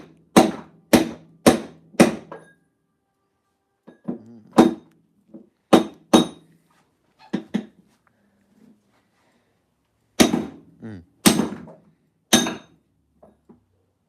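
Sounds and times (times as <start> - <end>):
hammer striking metal: 0.0 - 2.6, 5.7 - 6.5, 12.3 - 12.8.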